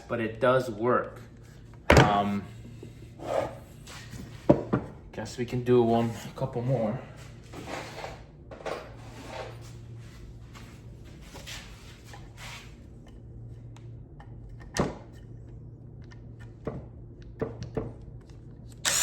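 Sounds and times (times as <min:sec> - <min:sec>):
low steady hum: 0:00.0 - 0:19.0
soft rustling and scraping: 0:08.8 - 0:12.8.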